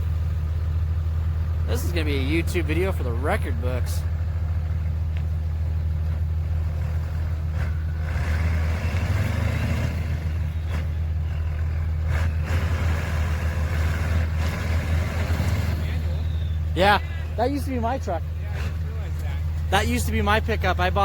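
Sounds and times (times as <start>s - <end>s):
truck engine running under load: 0.0s - 21.0s.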